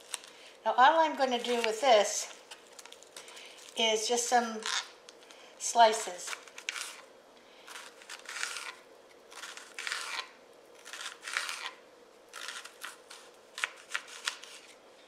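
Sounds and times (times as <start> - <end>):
knife slicing onion on board: 7.7 - 14.7.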